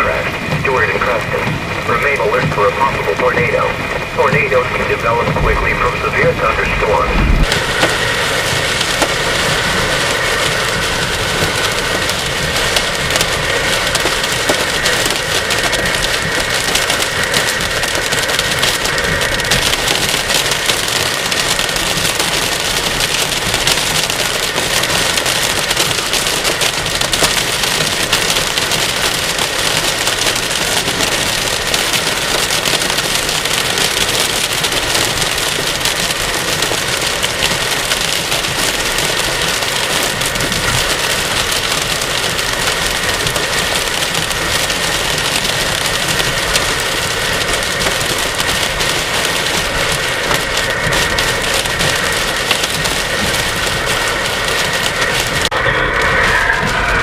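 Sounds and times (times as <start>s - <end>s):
heavy rain hissing: 0.0s - 57.0s.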